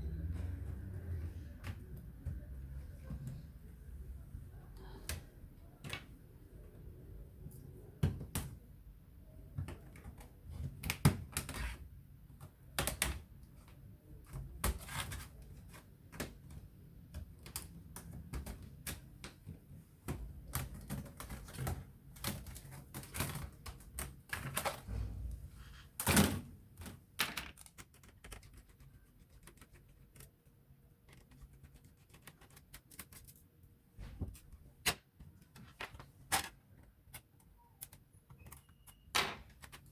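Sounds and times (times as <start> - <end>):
plastic parts clicking and knocking: 9.5 - 24.9, 26.0 - 28.6, 34.2 - 39.9.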